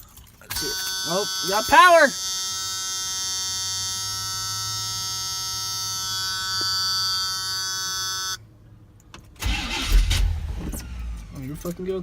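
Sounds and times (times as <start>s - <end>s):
electrical buzz: 0.6s - 8.4s
engine cranking: 9.3s - 12.0s.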